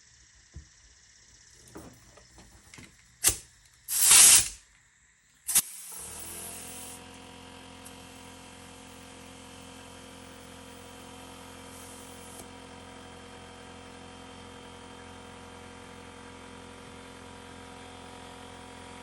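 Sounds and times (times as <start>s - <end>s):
compressed air hiss: 3.2s - 4.6s.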